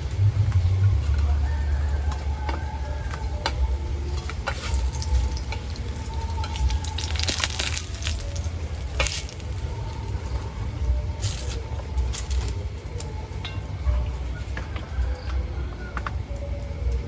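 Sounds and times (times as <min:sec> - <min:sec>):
low rumble: 0:00.0 - 0:17.0
wood fire crackling: 0:00.0 - 0:17.0.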